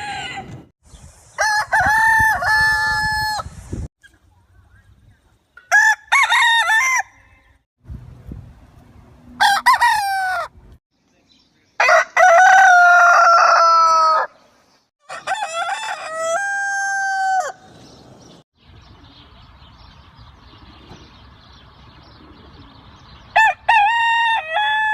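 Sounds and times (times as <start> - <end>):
roosters crowing: 0.0 - 0.7, 1.4 - 3.5, 5.7 - 7.6, 9.4 - 10.6, 11.8 - 14.4, 15.0 - 18.3, 23.3 - 24.9.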